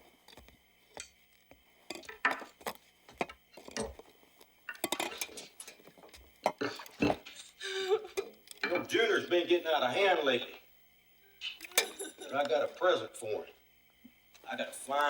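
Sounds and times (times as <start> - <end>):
hard objects clinking and knocking: 0.2 - 1.2, 1.9 - 7.4, 11.4 - 12.4.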